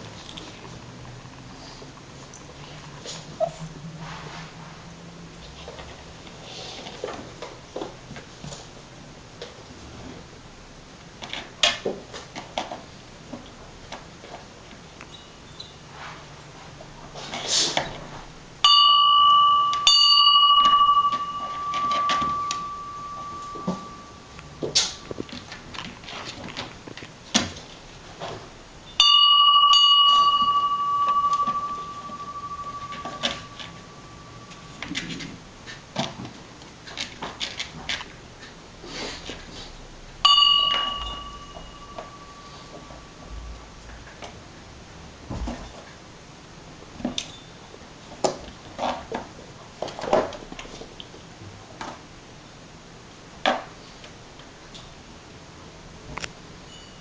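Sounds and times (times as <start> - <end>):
small metal bell ringing: 18.6 - 25.3, 28.9 - 34.8, 40.2 - 43.3, 56.7 - 57.0.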